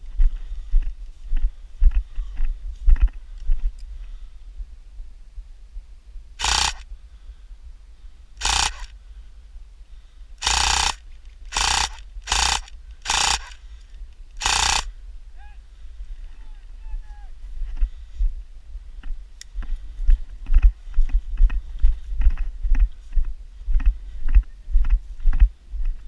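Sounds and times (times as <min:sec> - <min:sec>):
airsoft rifle full-auto bursts: 0:06.4 - 0:06.9, 0:08.4 - 0:08.9, 0:10.4 - 0:13.6, 0:14.4 - 0:14.9.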